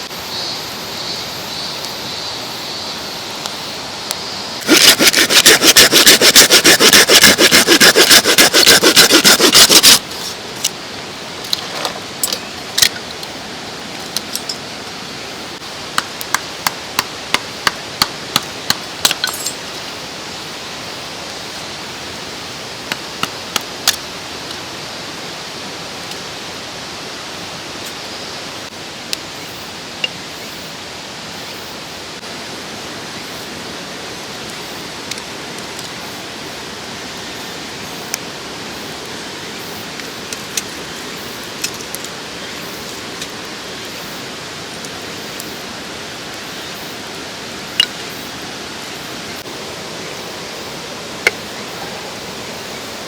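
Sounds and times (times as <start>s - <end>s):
mountain stream rushing: 2.3s - 53.0s
hand saw cutting wood: 4.6s - 10.0s.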